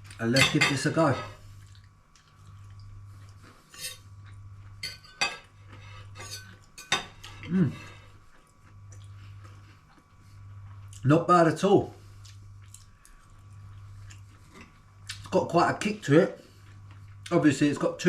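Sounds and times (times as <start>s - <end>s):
knife and fork scraping on plate: 0.4s - 1.4s, 3.5s - 4.1s, 4.8s - 7.4s.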